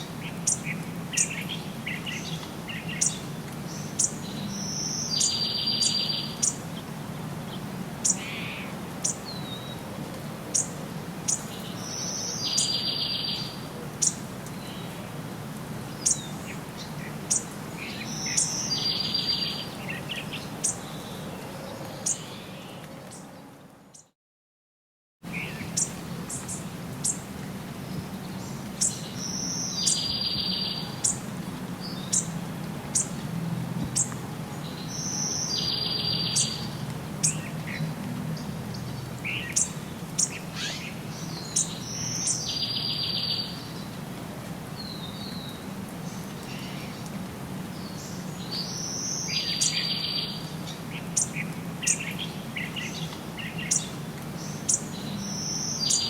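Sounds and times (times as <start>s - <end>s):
bird song with buzzy trill: 0.4s - 6.6s, 28.4s - 31.2s, 34.8s - 37.4s, 38.7s - 43.7s.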